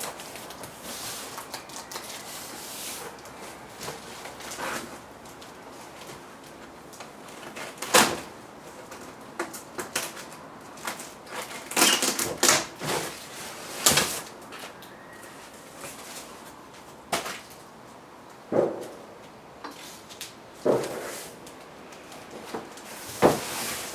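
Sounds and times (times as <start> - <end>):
cardboard box rustling scrapes: 22.4 - 23.9.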